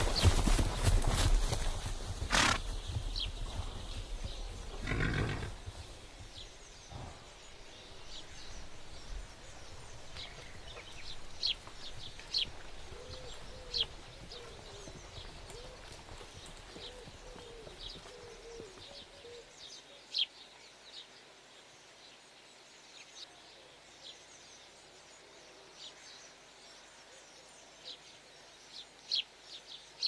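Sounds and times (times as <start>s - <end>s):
horses galloping hoofbeats: 0.0s - 19.4s
small birds chirping: 0.0s - 30.0s
horse whinnying: 2.3s - 2.6s, 4.8s - 5.6s
dove cooing: 12.9s - 16.0s, 16.8s - 19.5s.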